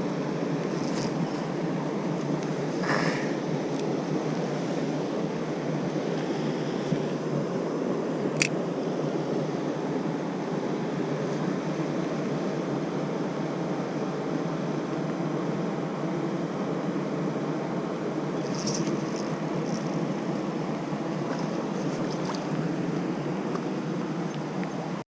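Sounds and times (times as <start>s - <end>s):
mountain stream rushing: 17.4s - 25.0s.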